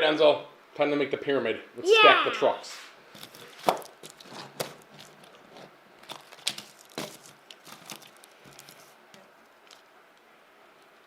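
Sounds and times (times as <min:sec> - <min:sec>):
crunching: 0:03.2 - 0:09.9.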